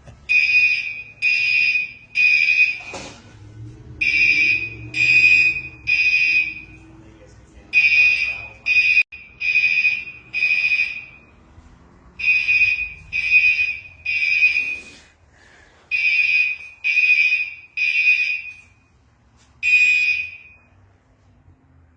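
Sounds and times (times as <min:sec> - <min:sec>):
fire alarm horn blasts: 0:00.3 - 0:03.2, 0:04.0 - 0:07.0, 0:07.7 - 0:11.4, 0:12.2 - 0:15.0, 0:15.9 - 0:19.0, 0:19.6 - 0:20.8.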